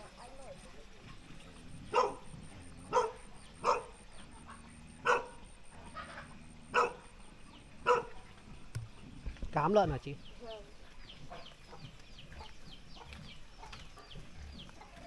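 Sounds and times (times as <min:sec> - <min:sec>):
dog barking: 0:01.9 - 0:02.3, 0:02.9 - 0:04.0, 0:05.0 - 0:05.4, 0:06.7 - 0:07.1, 0:07.8 - 0:08.2.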